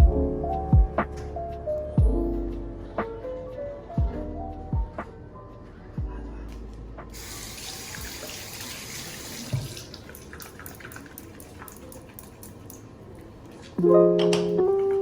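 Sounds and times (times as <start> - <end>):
running water: 7.2 - 13.0.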